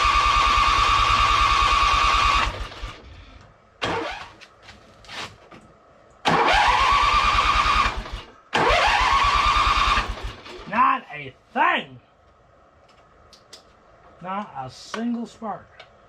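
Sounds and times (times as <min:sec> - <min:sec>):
electric starter cranking engine: 0:00.0 - 0:03.0, 0:03.8 - 0:04.4, 0:06.2 - 0:10.7.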